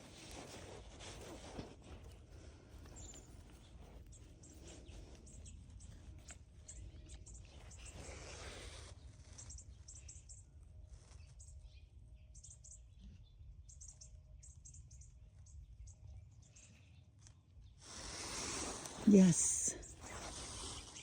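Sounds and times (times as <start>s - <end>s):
small birds chirping: 1.1s - 10.5s.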